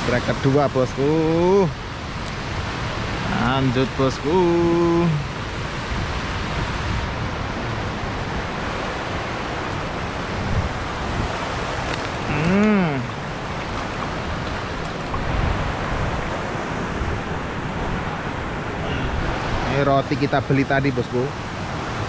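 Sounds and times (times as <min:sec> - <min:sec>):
wind buffeting microphone: 0:01.2 - 0:20.0
short hum rising and falling: 0:07.4 - 0:08.6.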